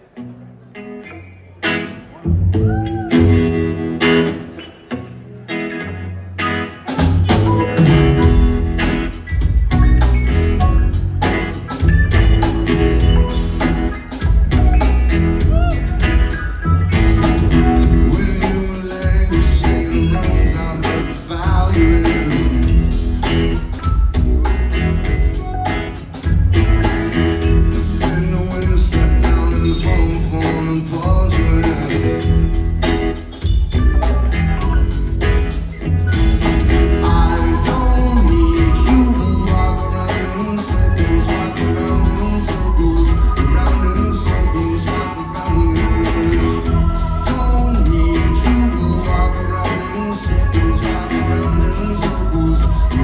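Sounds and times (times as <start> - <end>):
live band playing: 1.6 - 53.0
person singing: 12.4 - 24.2, 26.6 - 32.6, 36.5 - 53.0.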